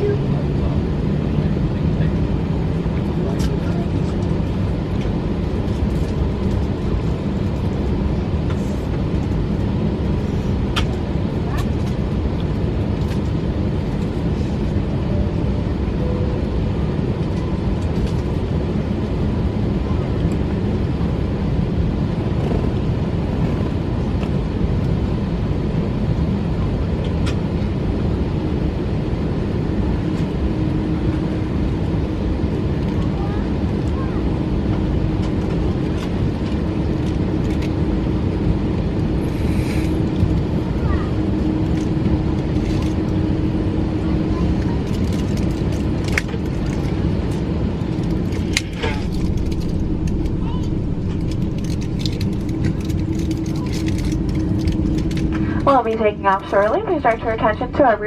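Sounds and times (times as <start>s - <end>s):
airplane cabin rumble: 0.0s - 58.0s
faint steady whine: 27.3s - 58.0s.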